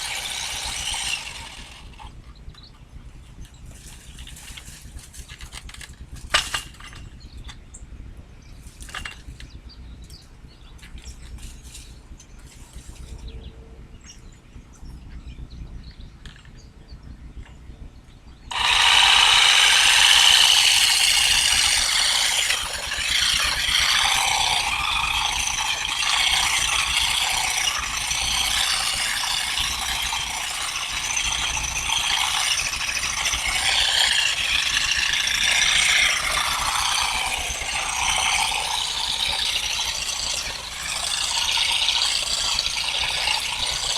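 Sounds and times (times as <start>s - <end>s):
loud mechanical clatter: 0.0s - 7.7s, 8.6s - 13.5s, 18.4s - 43.9s.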